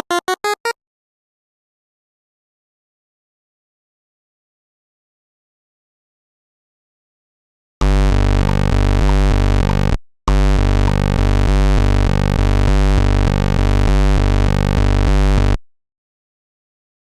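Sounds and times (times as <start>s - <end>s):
chiptune synthesizer low notes: 0.0s - 0.7s, 7.8s - 15.6s.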